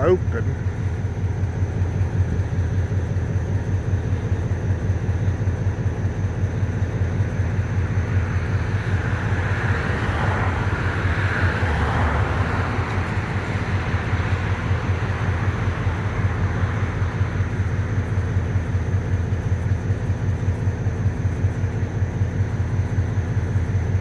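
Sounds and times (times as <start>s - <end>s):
locomotive diesel engine rumbling: 0.0s - 24.0s.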